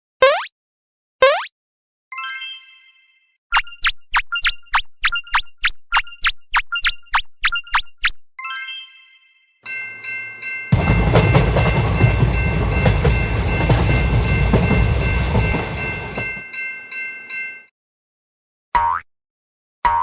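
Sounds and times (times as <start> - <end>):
level crossing warning bell: 9.6 - 17.7
train rumble: 9.9 - 17.4
wheels clicking over rail joints: 10.7 - 16.4.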